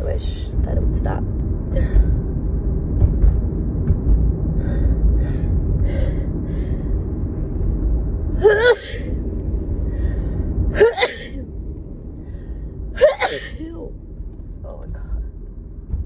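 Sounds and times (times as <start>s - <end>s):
car road rumble: 0.0s - 16.0s
woman breathing and gasping: 1.7s - 2.3s, 4.6s - 7.0s
woman sneezing: 13.0s - 13.6s.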